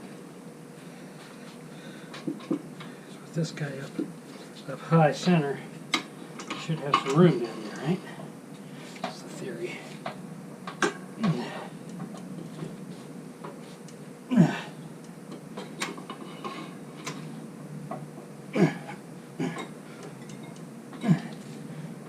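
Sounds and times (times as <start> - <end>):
man grunting with effort: 11.2 - 11.8, 14.3 - 14.8, 18.5 - 19.6, 21.0 - 21.4.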